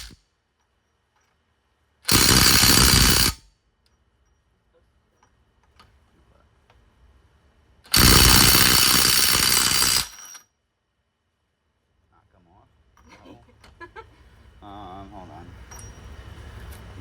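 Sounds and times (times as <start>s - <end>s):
impact wrench hammering: 2.1s - 3.4s, 7.9s - 10.4s.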